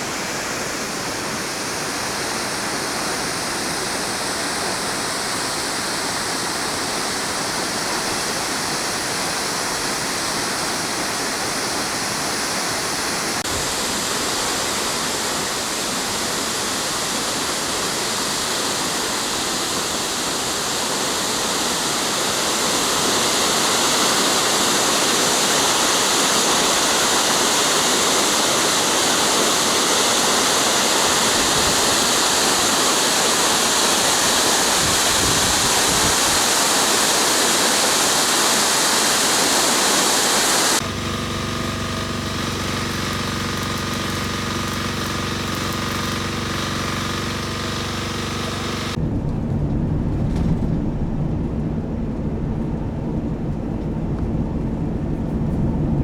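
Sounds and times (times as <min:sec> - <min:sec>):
waterfall rushing: 0:00.0 - 0:40.8
mechanical hum: 0:39.7 - 0:56.0.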